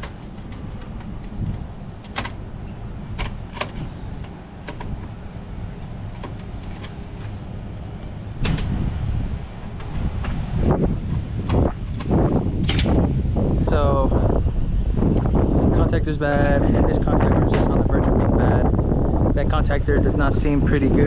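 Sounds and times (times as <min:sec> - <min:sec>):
tools clicking and knocking: 0:00.0 - 0:02.4, 0:03.2 - 0:05.2, 0:06.1 - 0:07.4
steady low rumble: 0:00.0 - 0:21.0.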